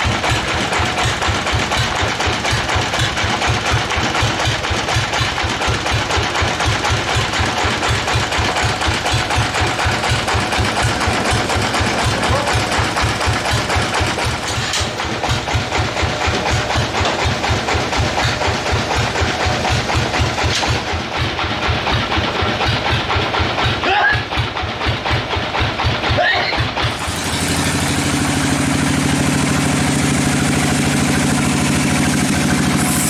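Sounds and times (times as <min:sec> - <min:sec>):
sawmill engine running: 0:00.0 - 0:33.0.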